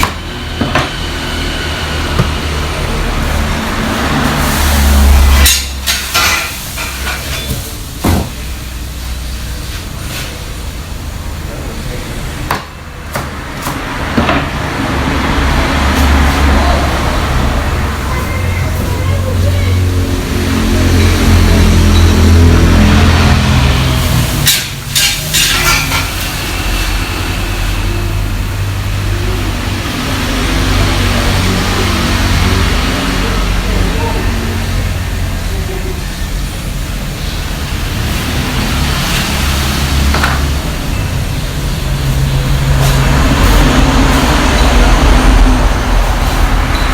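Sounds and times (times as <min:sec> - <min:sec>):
kitchen background noise: 0:00.0 - 0:46.9
cooking hiss: 0:04.2 - 0:12.4
utensils clattering against pans: 0:05.3 - 0:08.4, 0:24.1 - 0:27.4.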